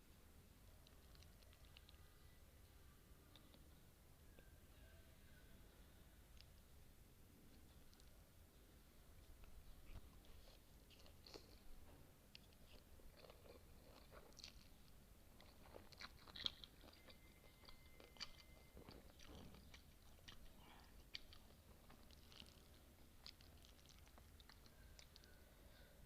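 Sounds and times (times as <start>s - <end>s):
chewing crunches: 9.9s - 25.4s.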